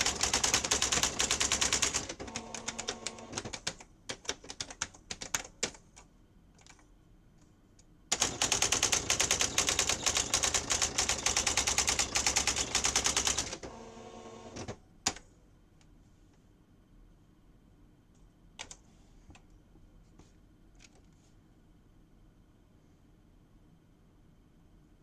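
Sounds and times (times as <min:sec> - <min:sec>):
typewriter motor whir: 0:00.0 - 0:03.6, 0:08.1 - 0:14.7
typewriter keystroke clicks: 0:08.1 - 0:13.6.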